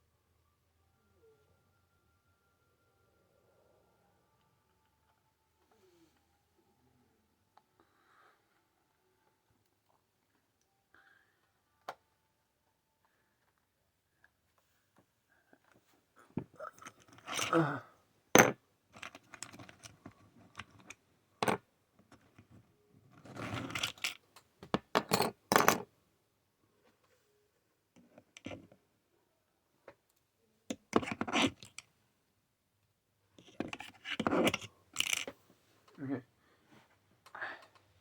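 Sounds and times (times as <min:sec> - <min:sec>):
small metal parts clinking: 0:16.7 - 0:17.6, 0:18.4 - 0:22.2, 0:23.2 - 0:24.2, 0:33.4 - 0:35.3.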